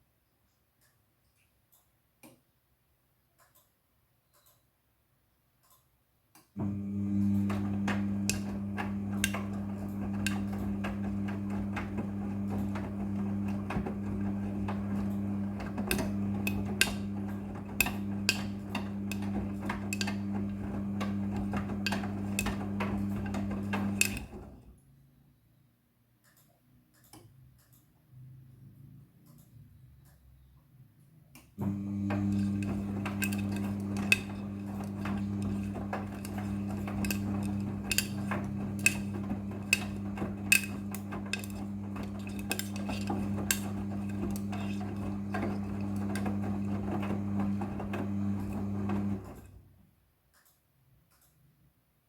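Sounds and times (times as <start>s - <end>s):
washing machine hum: 6.6s - 24.8s, 31.6s - 49.9s
clicks and knocks: 31.4s - 49.5s.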